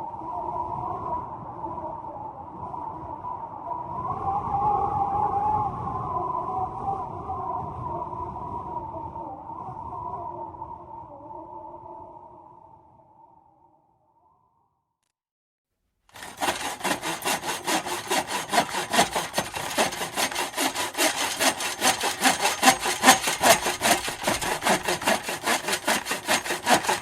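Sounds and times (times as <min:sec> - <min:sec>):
sawing strokes: 0:16.1 - 0:27.0.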